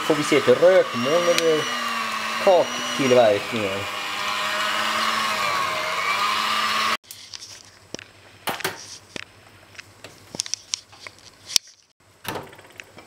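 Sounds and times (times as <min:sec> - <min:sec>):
electric hand mixer running: 0:00.0 - 0:07.0.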